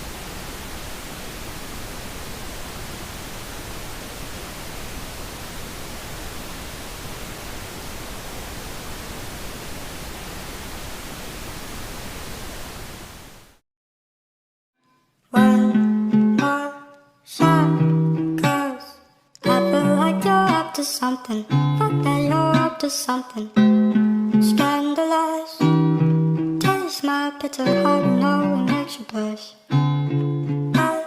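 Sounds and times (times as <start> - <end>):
steady hiss: 0.0 - 13.6.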